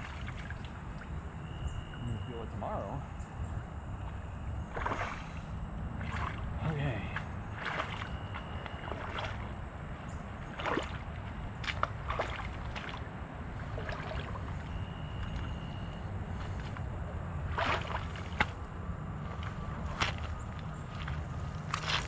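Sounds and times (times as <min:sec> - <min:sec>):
steady low rumble: 0:00.0 - 0:22.0
scuffs and rustles: 0:16.3 - 0:16.9.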